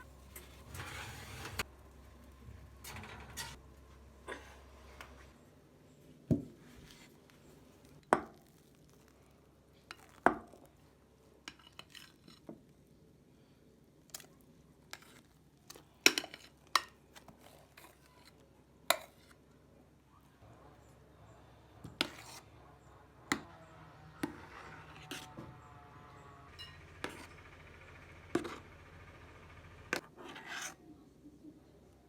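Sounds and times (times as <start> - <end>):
dishes and utensils clinking: 26.5 - 27.4.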